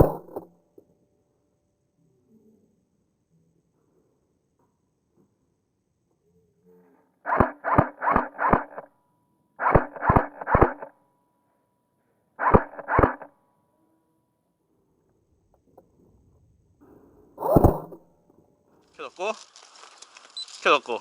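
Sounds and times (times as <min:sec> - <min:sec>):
airsoft gun firing single shots: 0:00.0 - 0:00.5, 0:07.3 - 0:08.9, 0:09.6 - 0:10.9, 0:12.4 - 0:13.3, 0:17.4 - 0:18.0.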